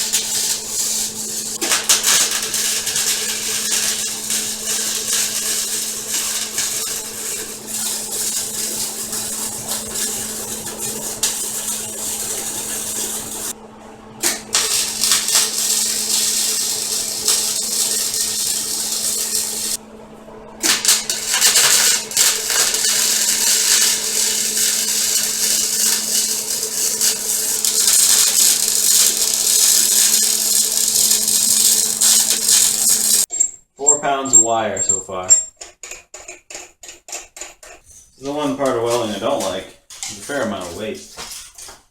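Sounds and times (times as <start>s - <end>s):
welding arc crackling and hissing: 0.0s - 13.6s, 14.2s - 19.8s, 20.6s - 33.3s, 38.2s - 41.9s
welder humming: 0.0s - 33.3s.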